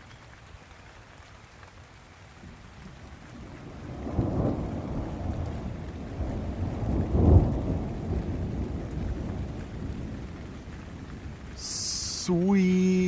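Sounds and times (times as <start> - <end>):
steady rainfall: 0.0 - 13.0
thunder rumbling: 3.6 - 12.3.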